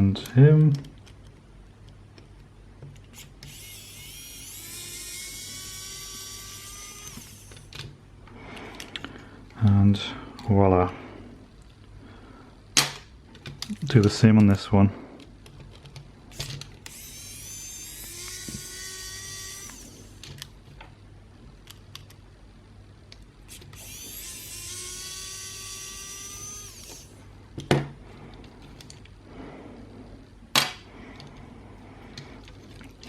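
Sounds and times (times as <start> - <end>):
electric screwdriver whirring: 3.2 - 7.7, 16.3 - 20.2, 23.5 - 27.2.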